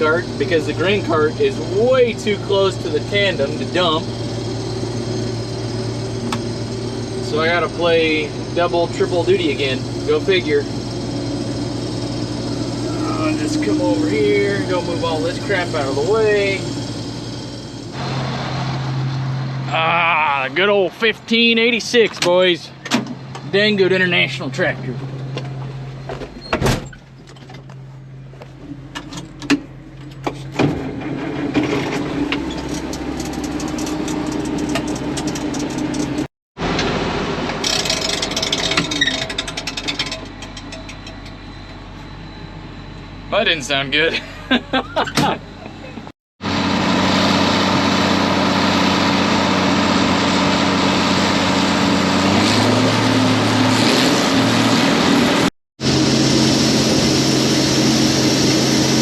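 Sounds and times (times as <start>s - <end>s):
tractor diesel engine running: 0.0s - 59.0s.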